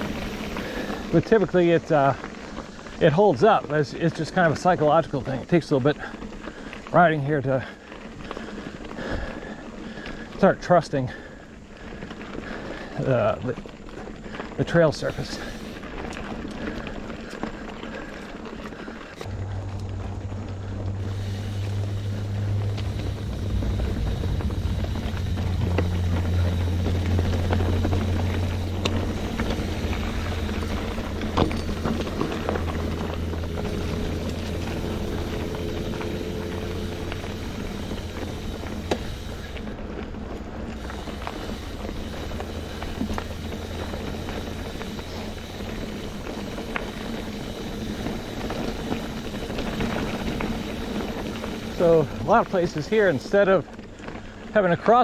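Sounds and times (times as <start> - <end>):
gravel and bike rattles: 0.0 - 55.0
rolling tyre noise: 0.0 - 55.0
wind rumble on microphone: 19.2 - 47.1.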